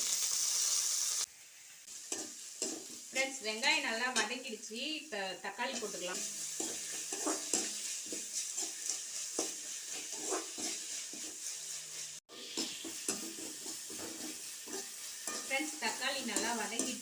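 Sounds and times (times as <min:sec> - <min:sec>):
onions sizzling in a pan: 0:00.0 - 0:17.0
spatula scraping a pan: 0:02.0 - 0:03.2, 0:05.6 - 0:17.0.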